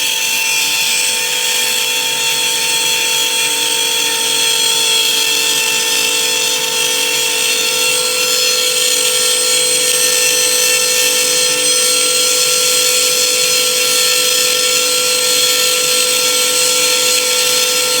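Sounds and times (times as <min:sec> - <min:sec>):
router spindle high whine: 0:00.0 - 0:18.0
bit cutting wood hiss: 0:00.6 - 0:17.8.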